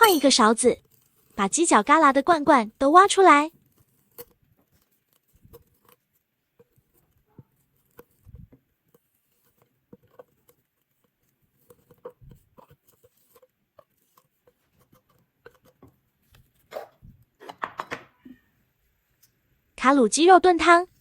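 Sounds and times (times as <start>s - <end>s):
spoon scraping inside tins: 0.0s - 2.1s.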